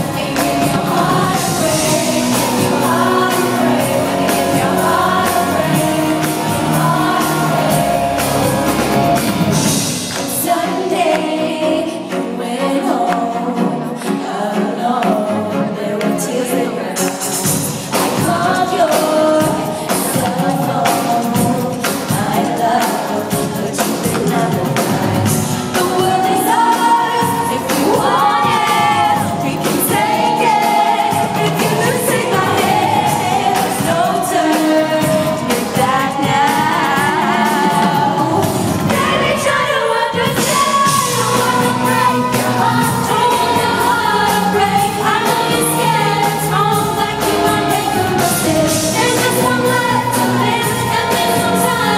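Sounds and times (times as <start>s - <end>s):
woman singing: 0.0s - 9.3s, 10.1s - 51.9s
live pop band with drum beat: 0.0s - 14.2s, 14.8s - 51.9s.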